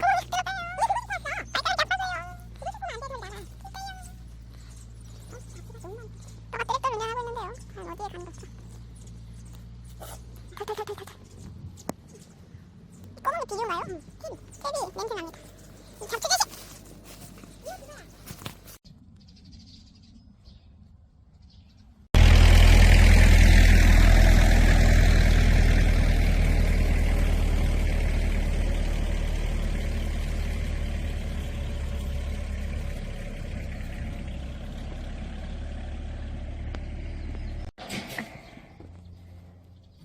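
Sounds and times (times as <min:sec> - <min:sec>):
loud engine drone: 0:22.2 - 0:37.7.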